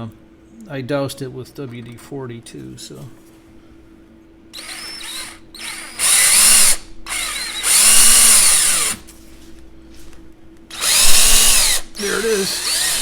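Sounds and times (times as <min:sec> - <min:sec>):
electric drill whirring: 0:04.6 - 0:09.0, 0:10.7 - 0:13.0.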